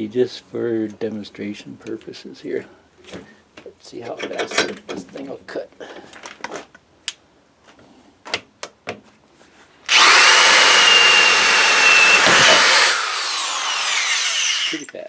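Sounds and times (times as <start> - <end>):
power drill boring through wood: 9.9 - 15.0.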